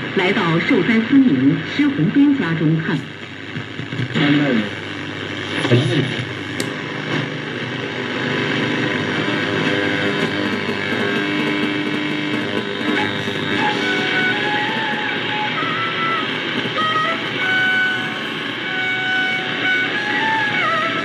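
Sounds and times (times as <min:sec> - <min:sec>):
radio static hiss: 0:00.0 - 0:21.0
faint radio broadcast: 0:00.2 - 0:10.2.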